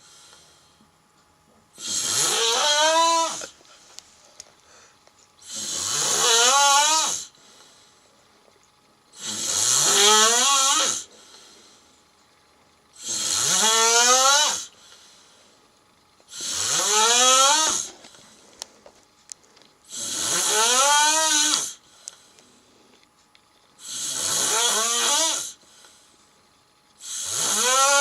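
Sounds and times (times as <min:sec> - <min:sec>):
loud snoring: 0:01.8 - 0:03.5, 0:05.4 - 0:07.3, 0:09.2 - 0:11.1, 0:13.0 - 0:14.7, 0:16.3 - 0:18.0, 0:19.9 - 0:21.8, 0:23.8 - 0:25.6, 0:27.0 - 0:28.0.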